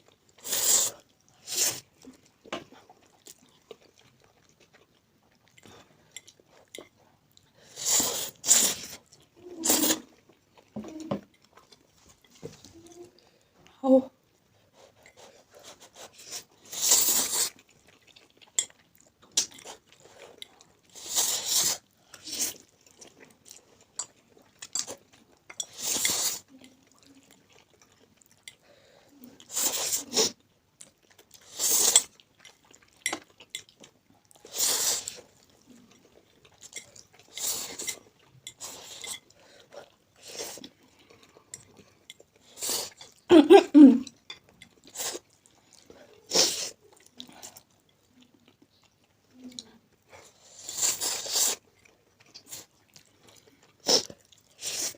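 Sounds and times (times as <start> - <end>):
chewing noodles: 0.0 - 13.6, 14.3 - 43.3, 44.0 - 54.9
noisy slurping: 7.6 - 10.2, 15.5 - 18.0, 25.6 - 27.2.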